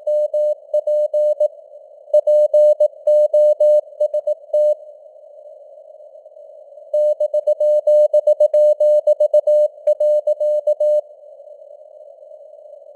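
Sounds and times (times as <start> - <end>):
morse code sine tone: 0.0 - 1.5, 2.1 - 4.8, 6.9 - 11.0.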